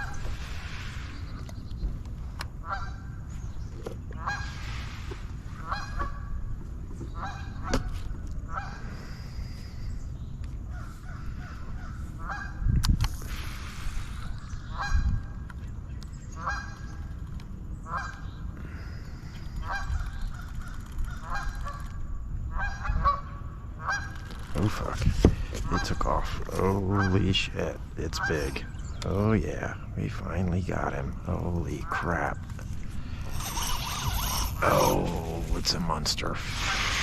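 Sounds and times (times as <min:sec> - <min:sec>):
geese honking: 0:02.6 - 0:03.1, 0:04.2 - 0:04.9, 0:25.6 - 0:28.7.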